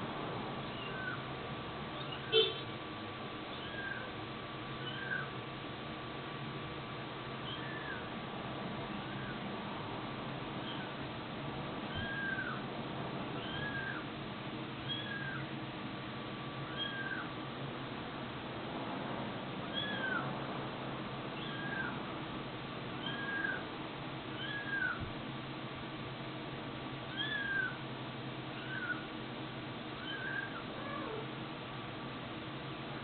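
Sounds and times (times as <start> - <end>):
kitten mewing: 0.6 - 1.2, 3.5 - 4.1, 4.8 - 5.3, 7.4 - 8.1, 9.0 - 9.4, 10.6 - 11.0, 11.9 - 12.6, 13.4 - 14.1, 14.8 - 15.5, 16.6 - 17.3, 19.7 - 20.3, 21.4 - 22.0, 23.0 - 23.7, 24.4 - 25.0, 27.1 - 27.8, 28.6 - 29.1, 30.0 - 31.4.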